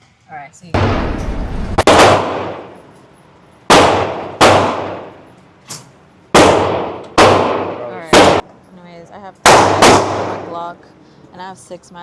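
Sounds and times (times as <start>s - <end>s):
gunshots with echo: 0.8s - 2.8s, 3.7s - 5.2s, 6.4s - 8.4s.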